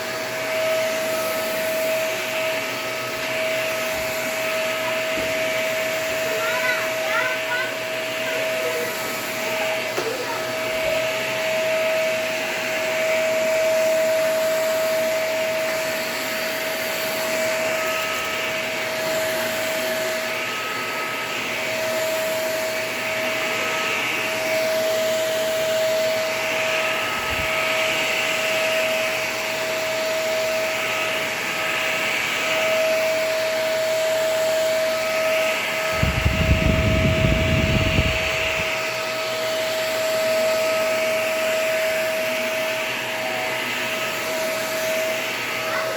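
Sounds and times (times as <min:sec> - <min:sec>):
vacuum cleaner running: 0:00.0 - 0:45.9.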